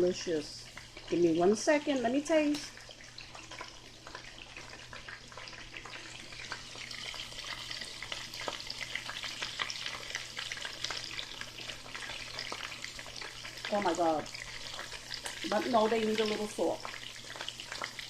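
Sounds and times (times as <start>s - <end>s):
chicken sizzling in oil: 0.0s - 18.0s.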